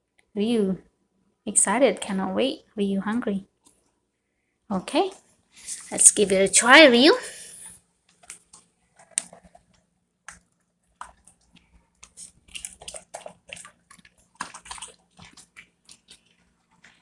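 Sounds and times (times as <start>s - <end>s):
dog chewing wet food: 8.4s - 17.0s.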